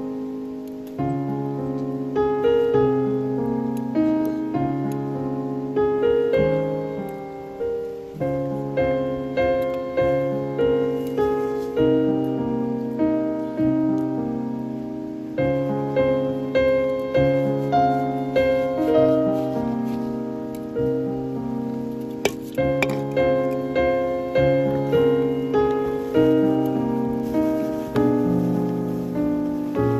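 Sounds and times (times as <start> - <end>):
solo piano music: 0.0 - 29.9.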